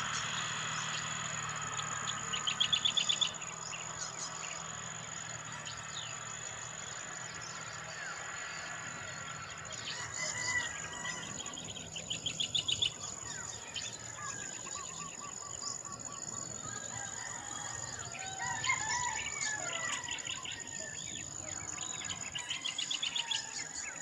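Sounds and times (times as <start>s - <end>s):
high-pitched insect drone: 0.0s - 17.2s
birds chirping and calling: 0.0s - 24.0s
rooster crowing: 7.8s - 12.3s, 16.4s - 21.2s, 21.8s - 24.0s.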